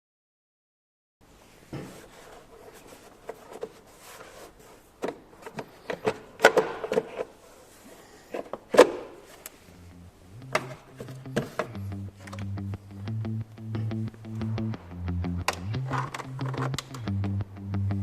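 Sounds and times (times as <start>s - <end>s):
tools and parts clicking and rattling: 5.0s - 7.4s, 15.5s - 17.1s.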